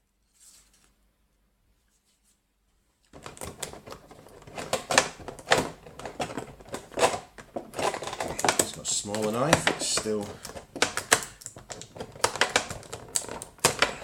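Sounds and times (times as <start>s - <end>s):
packaging clicks and crackles: 3.1s - 14.0s.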